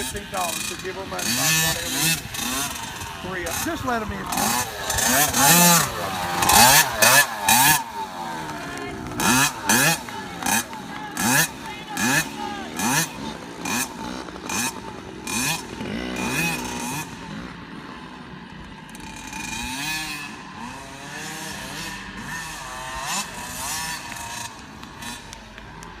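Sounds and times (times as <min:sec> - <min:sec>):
dirt bike engine revving: 0:00.0 - 0:26.0.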